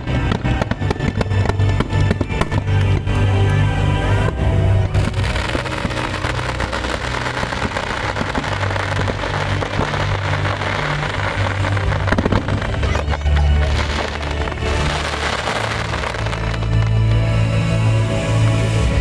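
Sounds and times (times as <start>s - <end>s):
low steady tones: 0.0s - 19.0s
fireworks crackling: 4.3s - 17.0s.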